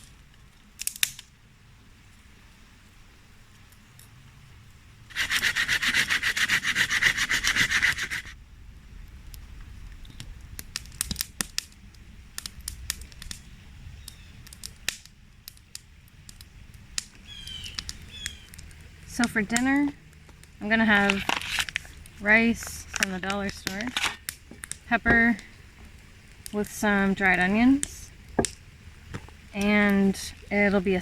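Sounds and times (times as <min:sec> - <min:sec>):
rapid scraping strokes: 0:05.1 - 0:08.4, 0:20.6 - 0:25.5.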